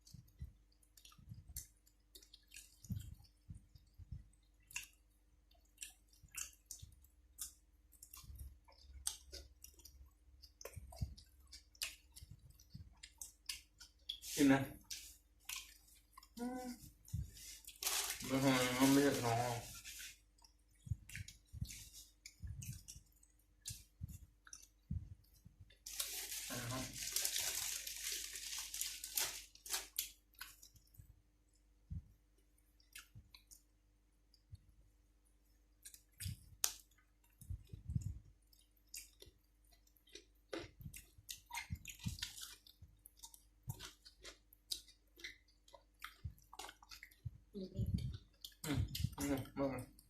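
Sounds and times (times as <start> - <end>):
chewing food: 0.0 - 18.2, 19.3 - 50.0
crisp crunching: 17.4 - 20.2, 25.8 - 30.6.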